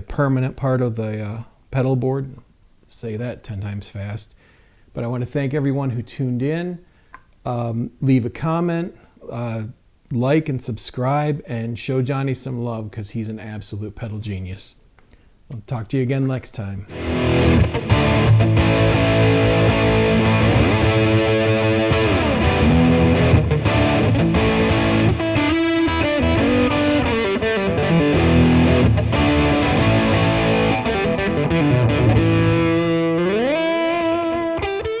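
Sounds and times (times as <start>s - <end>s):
overdriven electric guitar: 16.9s - 35.0s.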